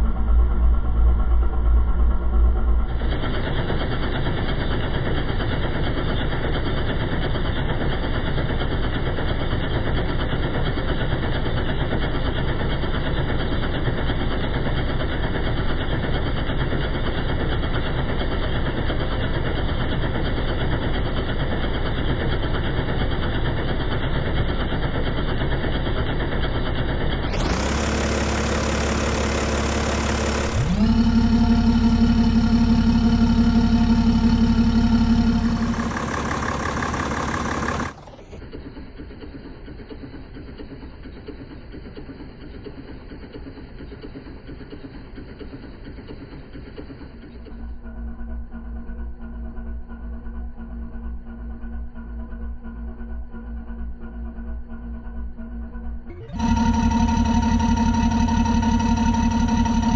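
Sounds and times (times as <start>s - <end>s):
diesel engine idling: 27.3s - 38.4s, 47.9s - 59.9s
steady hum: 27.4s - 38.2s, 56.0s - 59.9s.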